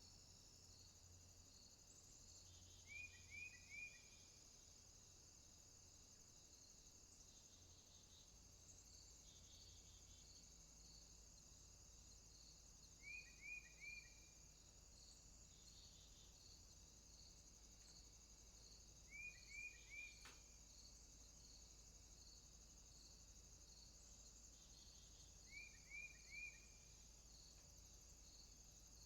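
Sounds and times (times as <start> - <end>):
high chorus of insects: 0.0 - 29.0
bird chirping: 2.4 - 4.2, 13.0 - 14.3, 19.1 - 20.4, 24.5 - 27.1
faint click: 20.1 - 20.5.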